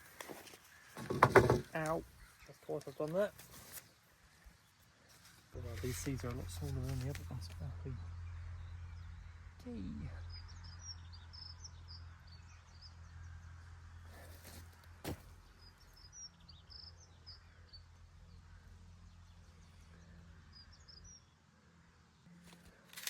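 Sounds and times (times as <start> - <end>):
songbird twittering: 5.6 - 13.2, 15.5 - 21.4.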